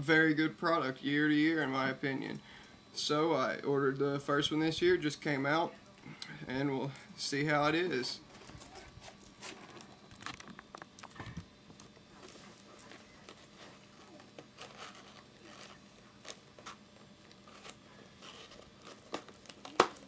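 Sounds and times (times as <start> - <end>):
plastic wrap rustling: 8.2 - 20.0.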